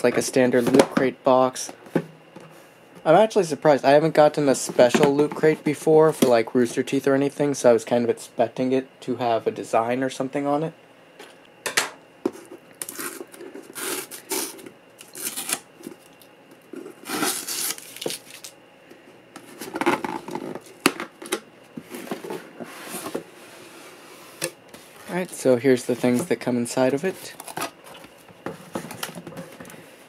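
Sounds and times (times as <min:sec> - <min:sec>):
cardboard box tearing and rustling: 0:17.0 - 0:18.5.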